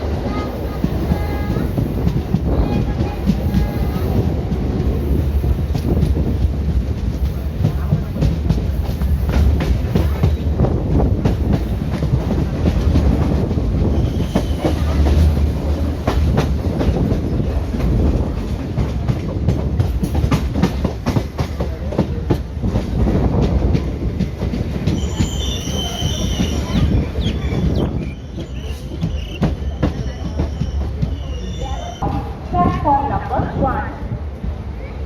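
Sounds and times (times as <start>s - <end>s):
train wheels rumbling on rails: 0.0s - 35.0s
high-pitched wheel squeal: 24.9s - 32.0s.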